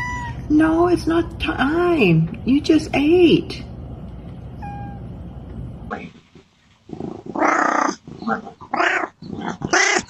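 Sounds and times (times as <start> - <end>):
cat yowling: 0.0 - 0.4, 4.6 - 5.0.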